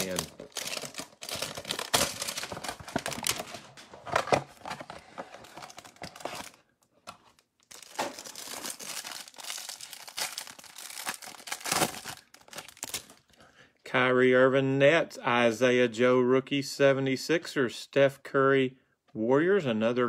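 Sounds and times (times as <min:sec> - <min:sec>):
plastic wrapper crinkling and tearing: 0:00.0 - 0:13.4.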